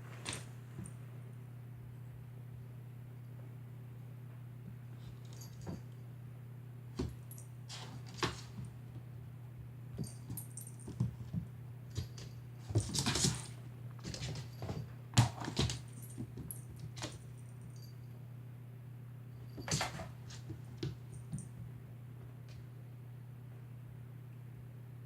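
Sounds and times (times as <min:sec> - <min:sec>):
cat scuffling: 0:00.0 - 0:01.0, 0:06.9 - 0:09.0, 0:09.9 - 0:17.4, 0:19.4 - 0:21.7
steady low hum: 0:00.0 - 0:25.0.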